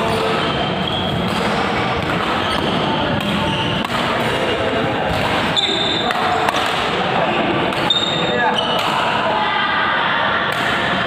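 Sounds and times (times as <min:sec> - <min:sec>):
shoe squeaks on court floor: 0:00.0 - 0:04.6, 0:05.5 - 0:06.4, 0:07.8 - 0:08.8
background chatter: 0:00.0 - 0:11.0
racket hitting shuttlecock: 0:01.0 - 0:07.0, 0:07.6 - 0:09.1, 0:10.5 - 0:11.0.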